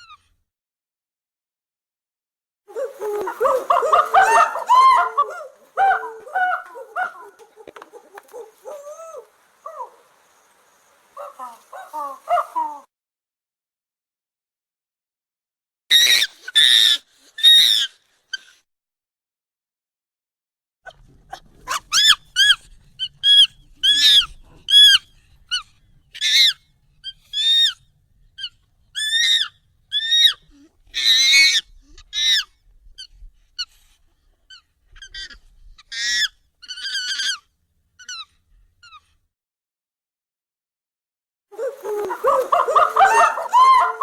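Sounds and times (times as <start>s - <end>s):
monkey calling: 2.7s - 10.3s, 11.1s - 12.9s, 21.6s - 25.6s, 26.2s - 27.8s, 28.4s - 32.5s, 34.5s - 39.0s, 41.6s - 44.0s.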